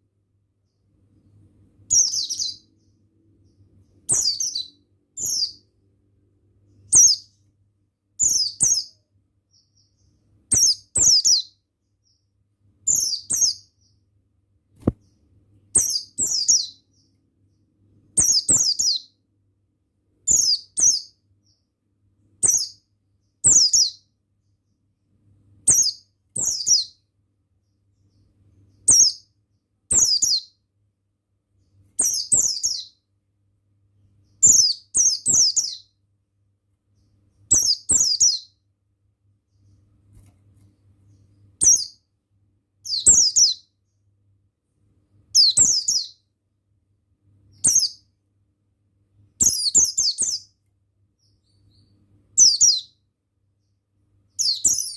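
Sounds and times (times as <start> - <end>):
bird chirping high falling phrases: 1.9 - 2.9, 4.0 - 5.6.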